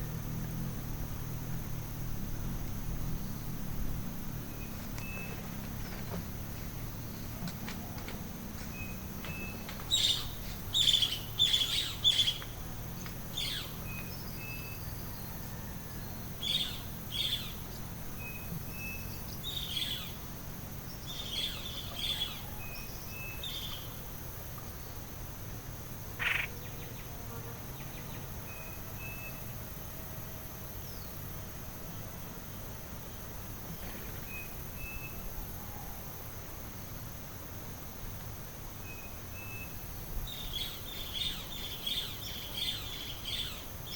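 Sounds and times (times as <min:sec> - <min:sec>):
insects droning: 0:00.0 - 0:43.9
birds calling: 0:04.4 - 0:15.4, 0:16.0 - 0:20.2, 0:26.1 - 0:27.1, 0:39.4 - 0:43.9.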